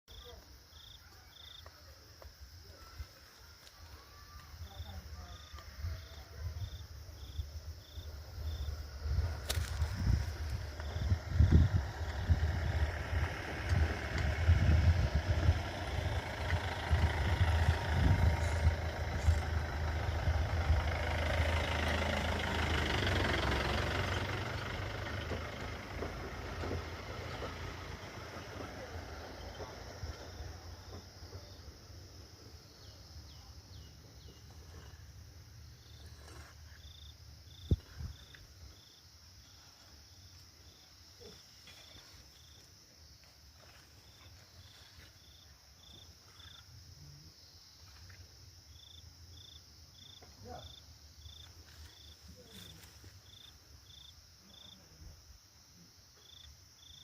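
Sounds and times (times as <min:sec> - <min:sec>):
insect chirps: 0:00.1 - 0:57.0
vehicle engine humming: 0:04.4 - 0:46.5.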